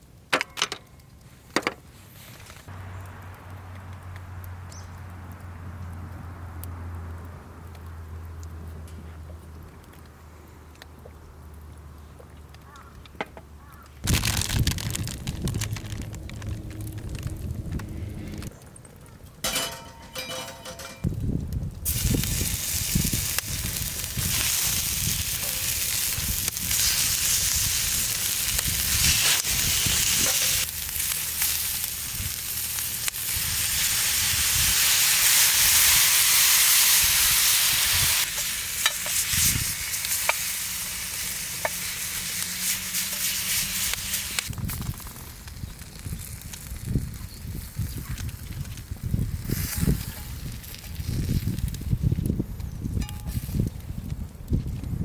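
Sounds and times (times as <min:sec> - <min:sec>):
sharp crackles and low knocks: 0:13.7 - 0:18.7, 0:44.4 - 0:55.0
food sizzling in a pan: 0:21.9 - 0:44.5.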